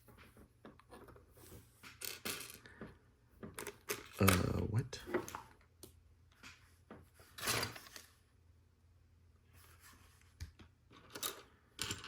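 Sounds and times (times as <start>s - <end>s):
plastic pieces rustling and clattering: 10.9s - 12.0s.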